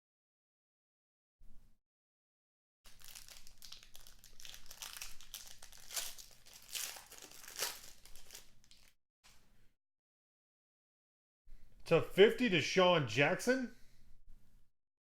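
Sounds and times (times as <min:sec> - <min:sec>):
plastic sleeves crinkling: 0:02.9 - 0:08.9.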